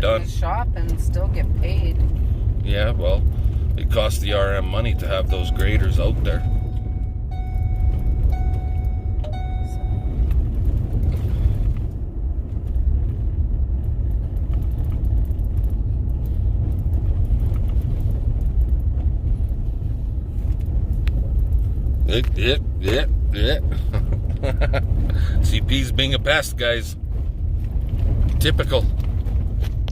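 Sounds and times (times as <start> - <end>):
vehicle rumbling on gravel road: 0.0 - 29.9
held tone with overtones: 4.4 - 10.5.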